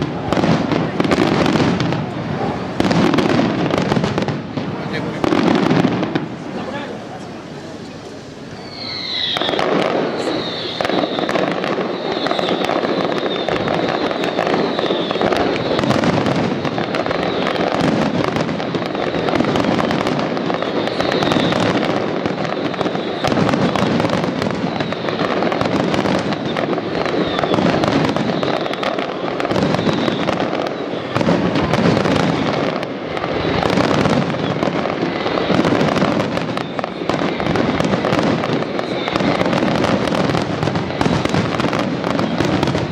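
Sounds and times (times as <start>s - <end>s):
fireworks bangs and crackling: 0.0s - 42.9s
fireworks whistles falling in pitch: 0.0s - 42.9s.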